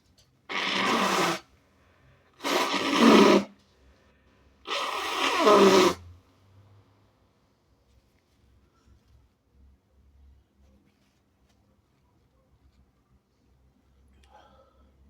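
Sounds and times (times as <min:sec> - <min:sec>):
person blowing nose: 0:00.5 - 0:01.5, 0:02.4 - 0:03.6, 0:04.7 - 0:06.1.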